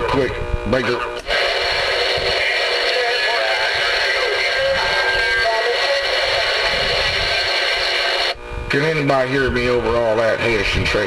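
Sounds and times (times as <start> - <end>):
garbled radio voices: 0.0 - 11.0
radio static hiss: 0.0 - 11.0
radio whistles: 1.0 - 8.4.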